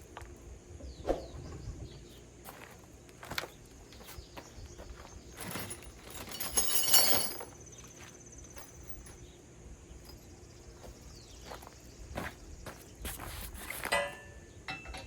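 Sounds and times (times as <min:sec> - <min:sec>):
metal rack parts clattering: 0:05.0 - 0:07.6, 0:13.7 - 0:15.0.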